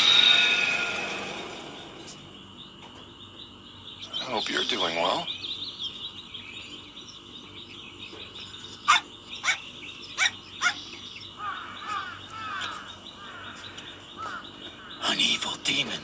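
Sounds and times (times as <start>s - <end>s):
high insect drone: 0.0s - 16.0s
sharp animal calls: 8.8s - 15.5s.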